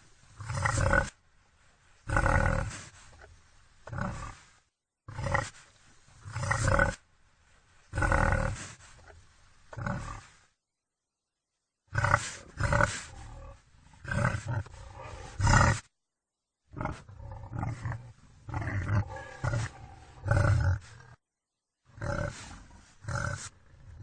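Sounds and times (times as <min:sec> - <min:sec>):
wild boar harsh calls: 0:16.7 - 0:21.2, 0:22.0 - 0:23.5.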